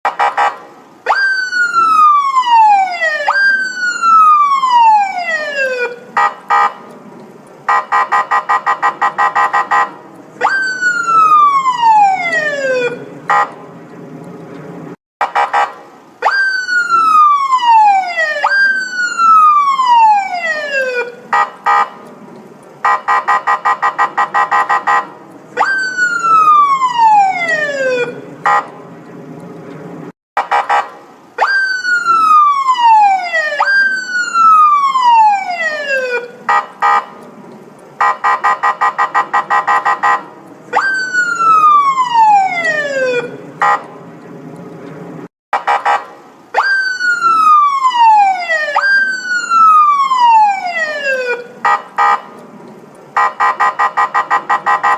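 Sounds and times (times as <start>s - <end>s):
police siren wailing: 0.1s - 6.9s, 7.6s - 13.9s, 15.2s - 29.3s, 30.4s - 44.2s, 45.6s - 52.4s, 53.2s - 54.9s
fast pulsing siren tone: 7.7s - 13.1s, 25.6s - 28.2s, 38.0s - 43.8s.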